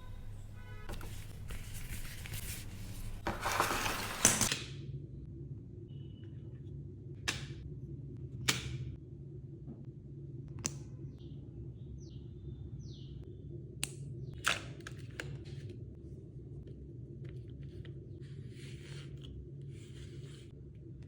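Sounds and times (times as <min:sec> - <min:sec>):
rustling: 0:00.8 - 0:04.5.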